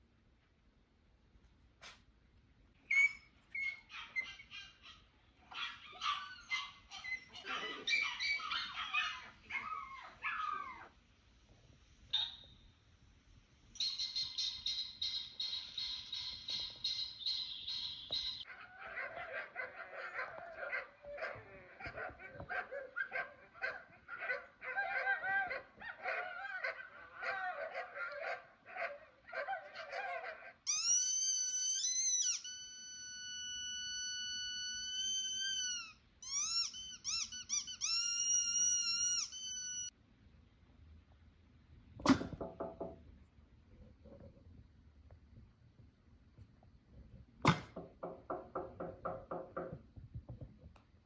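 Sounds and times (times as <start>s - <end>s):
high-pitched sliding squeals: 30.7s - 39.9s
quick high squeaks: 30.7s - 39.9s.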